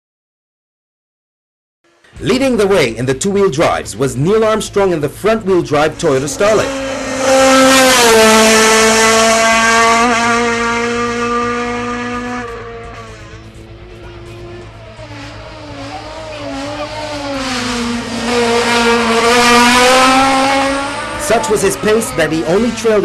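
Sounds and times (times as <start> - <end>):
wavering engine note: 1.9 - 23.0
rally car engine at high revs: 5.4 - 23.0.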